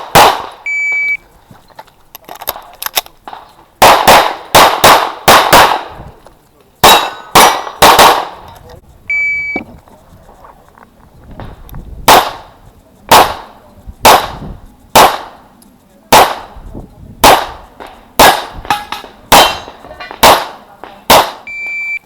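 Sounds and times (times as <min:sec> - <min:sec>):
pistol shots: 0:00.0 - 0:00.6, 0:03.3 - 0:06.0, 0:06.8 - 0:08.4, 0:12.0 - 0:12.5, 0:13.1 - 0:15.4, 0:16.1 - 0:16.6, 0:17.2 - 0:21.5.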